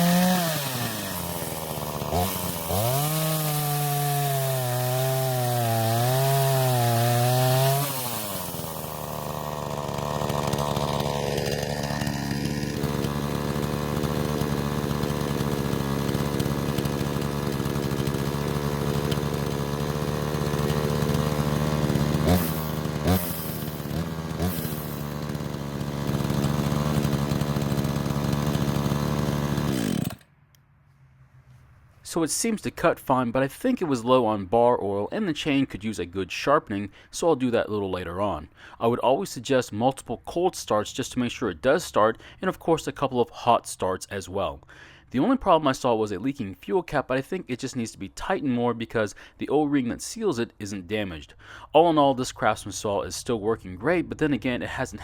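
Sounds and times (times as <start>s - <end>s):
wood cracking: 0.0s - 30.2s
chainsaw cutting a limb: 0.0s - 30.3s.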